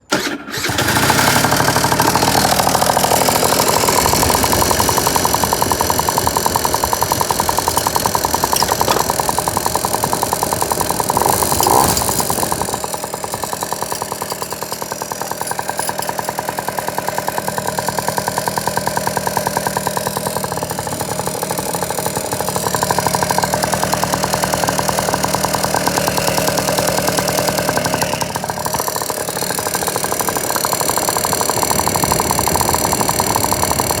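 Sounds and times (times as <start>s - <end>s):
scooter engine running: 0.0s - 34.0s
engine ticking: 0.1s - 34.0s.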